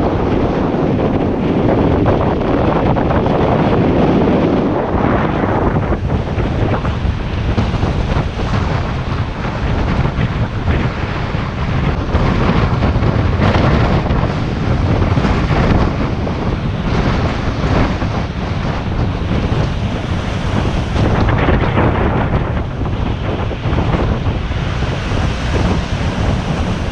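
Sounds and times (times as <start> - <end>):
gusty wind buffeting microphone: 0.0 - 26.9
surf: 0.0 - 26.9.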